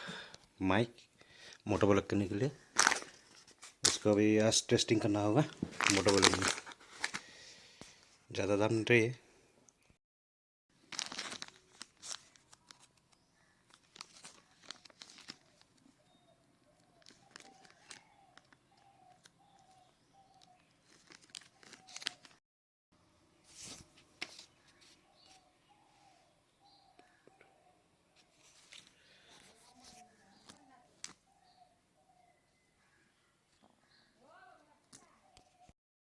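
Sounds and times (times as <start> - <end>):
plastic packaging crinkling: 2.7 - 4.2, 5.1 - 7.3, 10.8 - 22.4.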